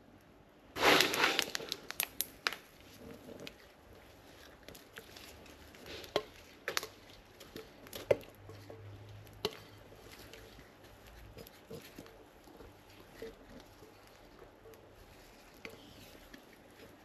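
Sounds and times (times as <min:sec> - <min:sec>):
popping candy crackling: 0:00.8 - 0:17.0.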